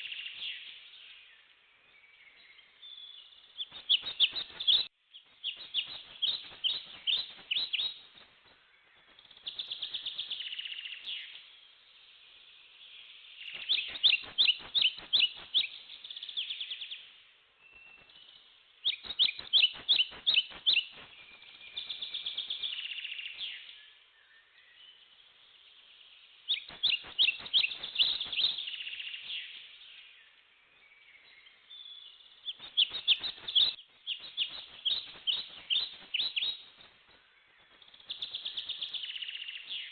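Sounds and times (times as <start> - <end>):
songbirds singing sharp notes: 0.0 - 39.9.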